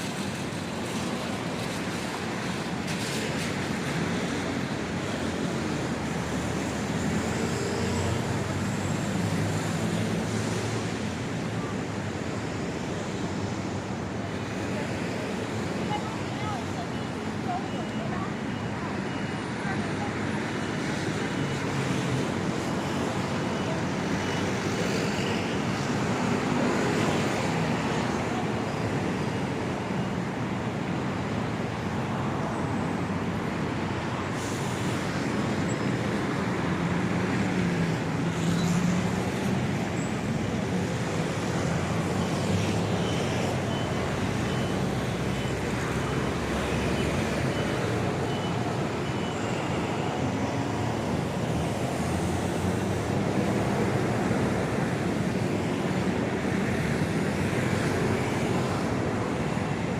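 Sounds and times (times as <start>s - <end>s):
passing traffic: 0.0s - 59.9s
faint high beeps: 42.2s - 50.3s.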